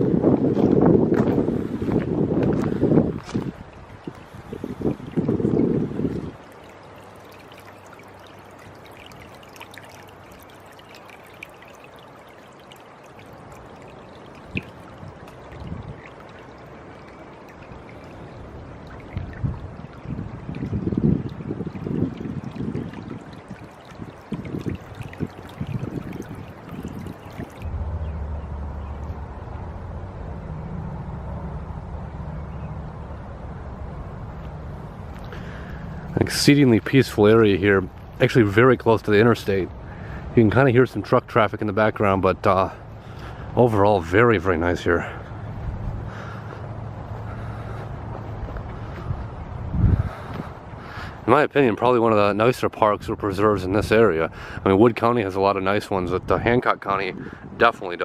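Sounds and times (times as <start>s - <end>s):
rushing outdoor background: 0.0s - 58.0s
distant truck traffic rumble: 23.2s - 57.8s.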